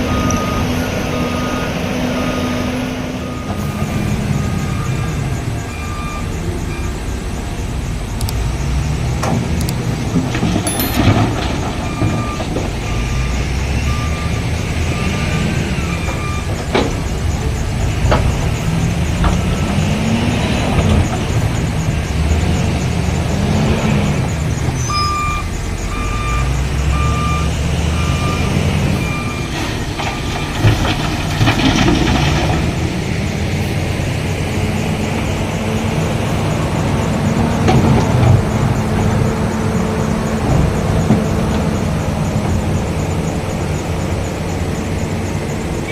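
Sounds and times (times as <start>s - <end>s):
heavy diesel engine under load: 0.0s - 45.9s
pulsed warning beep: 10.7s - 16.5s, 24.8s - 29.5s.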